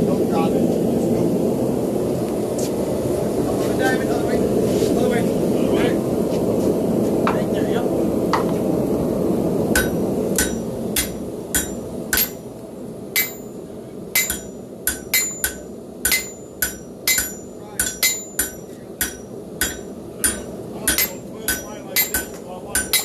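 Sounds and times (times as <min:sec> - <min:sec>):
hammer striking metal on anvil: 0:09.8 - 0:12.5, 0:13.2 - 0:23.0.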